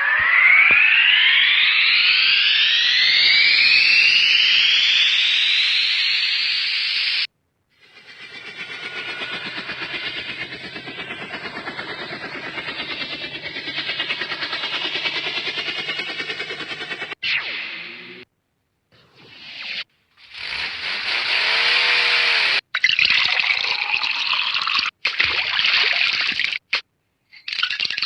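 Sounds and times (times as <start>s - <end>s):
rising sweeping tones: 0.0s - 18.3s
pulsing hiss: 5.7s - 18.2s, 19.1s - 22.6s.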